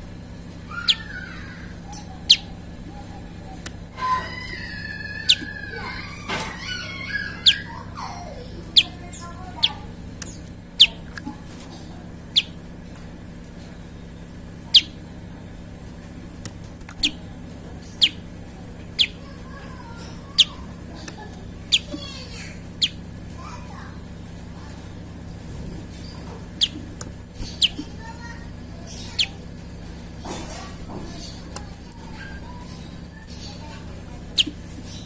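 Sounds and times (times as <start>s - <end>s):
steady low hum: 0.0s - 35.0s
soft bird twittering: 0.1s - 35.0s
bird calling with sharp high notes: 0.7s - 2.6s, 3.9s - 11.0s, 12.3s - 12.6s, 14.7s - 15.0s, 18.9s - 20.7s, 21.7s - 23.0s.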